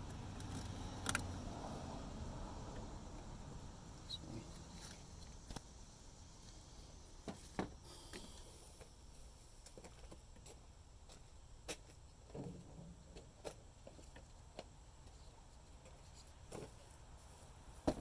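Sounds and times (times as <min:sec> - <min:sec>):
parts being handled clicks: 0:00.4 - 0:01.3.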